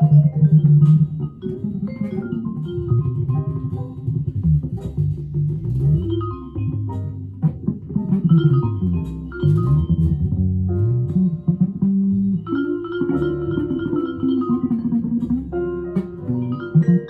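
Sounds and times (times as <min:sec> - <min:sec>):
bass line: 0:00.0 - 0:17.0
electric guitar jazz tune: 0:00.0 - 0:17.0
light percussion: 0:00.0 - 0:17.0.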